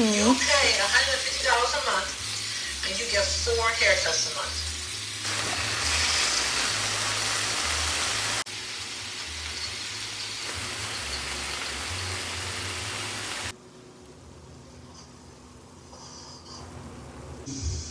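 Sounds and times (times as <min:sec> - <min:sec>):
food sizzling in a frying pan: 0:00.0 - 0:13.6.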